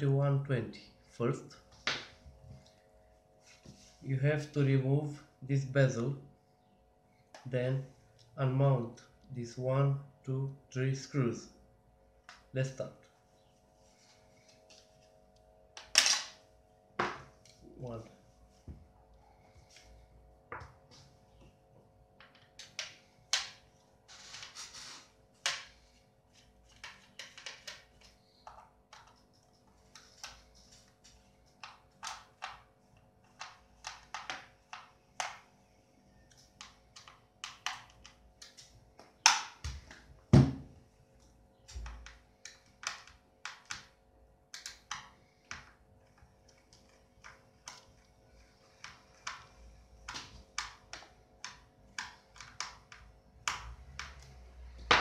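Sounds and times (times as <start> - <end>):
screwdriver clicks and taps: 44.5 - 45.7.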